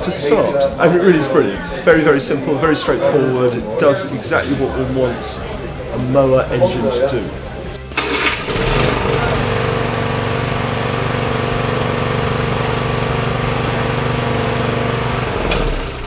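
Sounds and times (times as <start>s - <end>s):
lawn mower engine running: 7.9s - 16.0s.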